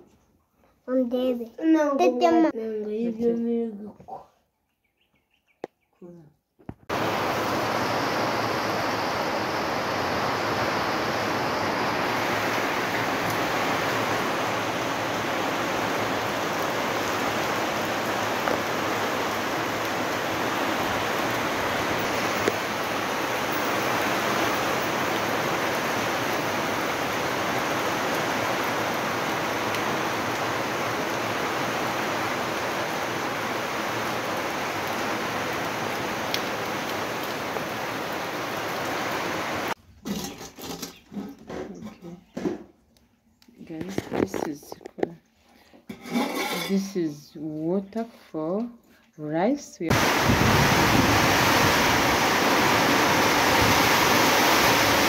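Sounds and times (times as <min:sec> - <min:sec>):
heavy rain: 0:06.9 - 0:39.8, 0:49.9 - 0:55.0.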